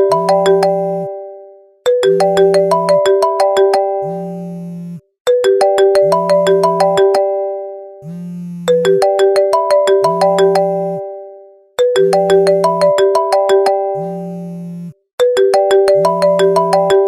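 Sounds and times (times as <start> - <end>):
marimba-like phone ringtone: 0.0 - 8.0, 8.7 - 17.0
phone vibration motor buzzing: 4.0 - 5.1, 8.0 - 9.1, 14.0 - 15.0.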